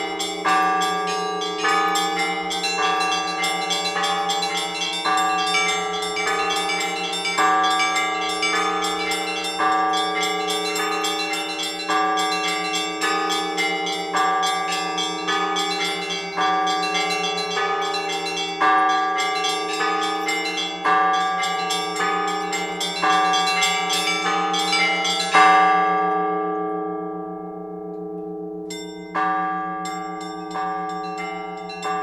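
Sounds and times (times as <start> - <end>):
large church bells ringing: 0.0 - 32.0
small high church bells: 0.0 - 32.0.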